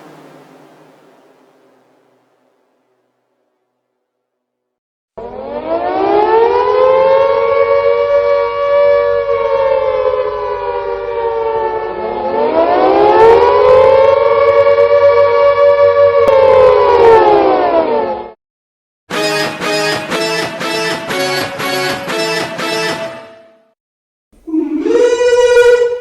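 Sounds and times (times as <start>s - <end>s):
civil defense siren wailing: 5.2s - 18.4s.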